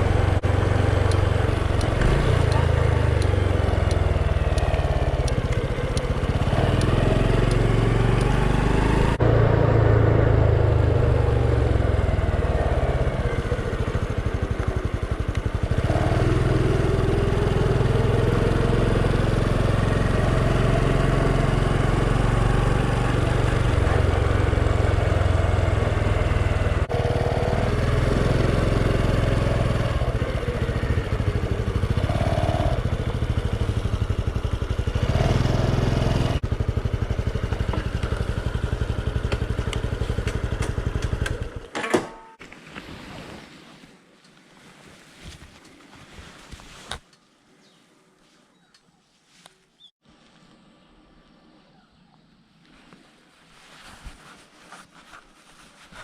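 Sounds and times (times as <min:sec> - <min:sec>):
motorcycle engine running: 0:00.0 - 0:41.7.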